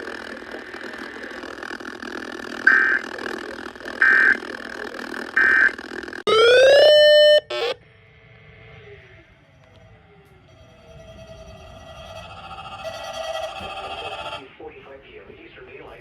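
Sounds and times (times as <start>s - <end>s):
radio static hiss: 0.0s - 6.2s
buzzy data bursts: 0.0s - 7.8s
held synth tone: 6.3s - 7.8s
electronic rising sweep: 6.3s - 7.9s.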